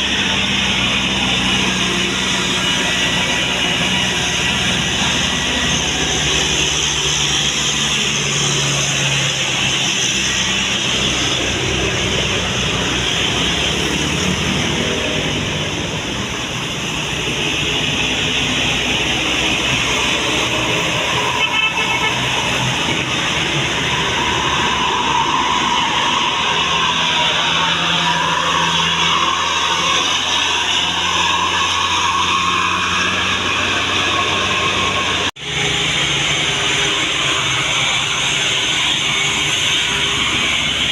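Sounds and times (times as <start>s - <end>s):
heavy vehicle engine roar: 0.0s - 40.9s
road noise: 0.0s - 40.9s.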